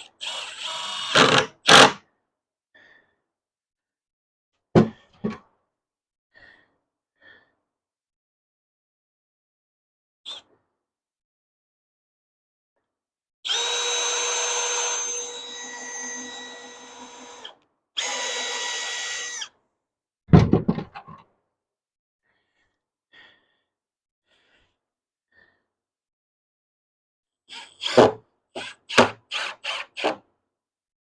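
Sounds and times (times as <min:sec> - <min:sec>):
cordless drill whining: 0:00.0 - 0:01.9, 0:13.5 - 0:19.5, 0:27.5 - 0:30.1.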